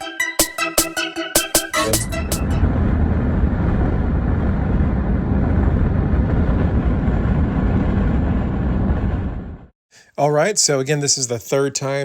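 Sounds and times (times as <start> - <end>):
road and wind noise: 2.0 - 9.7.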